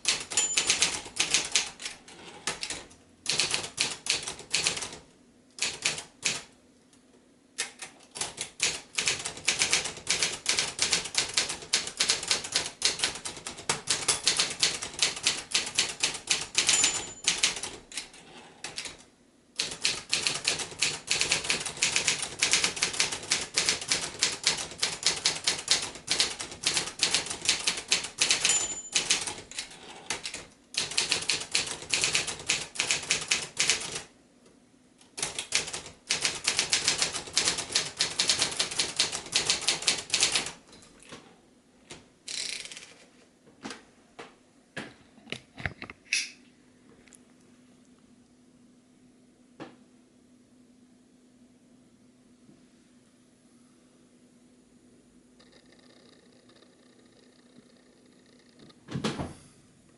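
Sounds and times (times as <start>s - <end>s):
manual typewriter typing: 0.0s - 5.0s, 5.6s - 6.5s, 7.6s - 34.1s, 35.1s - 40.6s, 42.3s - 43.0s
typewriter margin bell ding: 0.2s - 1.1s, 16.5s - 17.8s, 28.2s - 29.4s.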